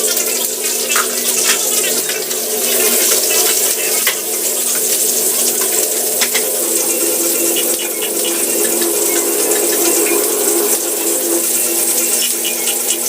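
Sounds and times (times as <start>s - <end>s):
water running from tap: 0.0s - 13.0s.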